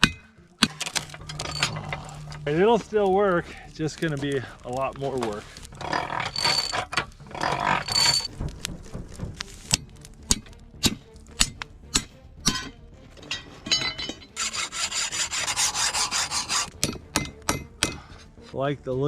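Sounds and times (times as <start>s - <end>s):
file rasping on steel: 5.8s - 8.3s, 14.3s - 18.4s.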